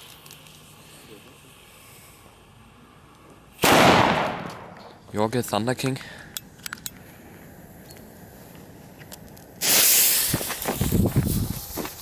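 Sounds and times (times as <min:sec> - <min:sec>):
firework hissing burst: 0:09.6 - 0:12.0.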